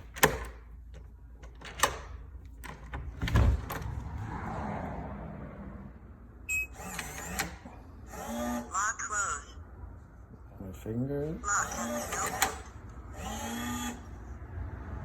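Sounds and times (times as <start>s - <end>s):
lock clicks and knocks: 0.0s - 4.0s.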